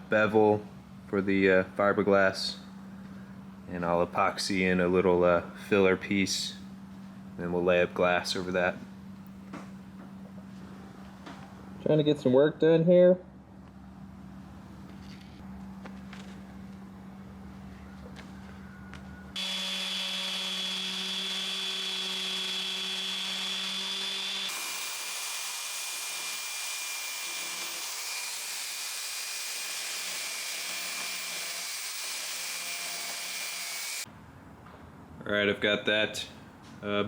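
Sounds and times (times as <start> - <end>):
power tool sanding fiberglass: 19.4 - 34.0.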